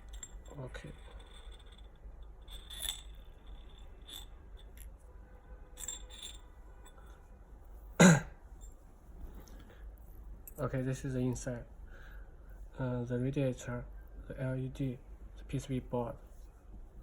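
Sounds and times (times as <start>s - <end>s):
small metal parts clicking: 0.0s - 5.0s, 5.7s - 7.1s.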